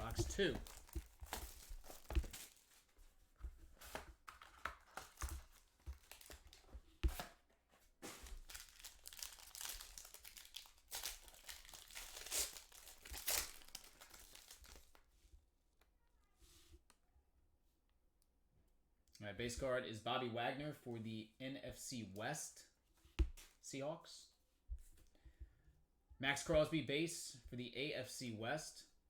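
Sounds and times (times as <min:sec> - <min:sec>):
plastic wrap tearing and crinkling: 0:00.0 - 0:02.9, 0:04.2 - 0:07.3, 0:08.0 - 0:15.1.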